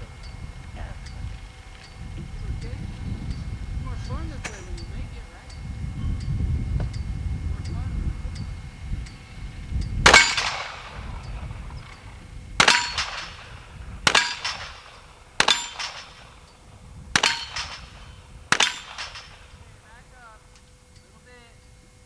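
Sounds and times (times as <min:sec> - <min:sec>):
revolver gunshots with echo: 0:10.0 - 0:20.4.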